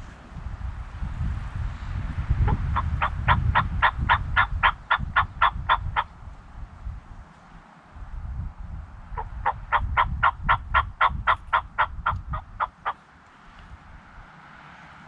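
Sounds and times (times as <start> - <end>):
turkey yelping: 2.5 - 6.1, 9.2 - 13.0.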